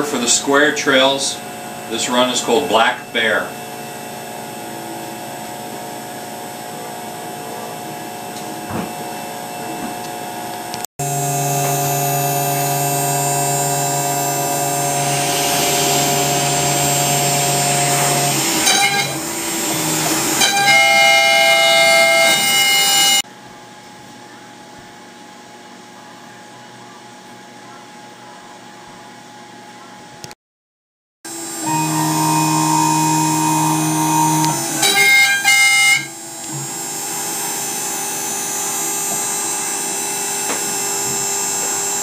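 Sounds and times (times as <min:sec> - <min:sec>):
cnc router machine whine: 0:00.0 - 0:23.2, 0:31.3 - 0:42.0
quiet machine hum: 0:11.0 - 0:22.8.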